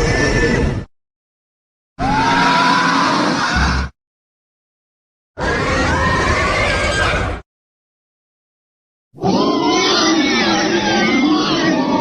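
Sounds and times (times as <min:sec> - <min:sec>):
dinosaur roar: 0:02.0 - 0:03.9, 0:09.2 - 0:12.0.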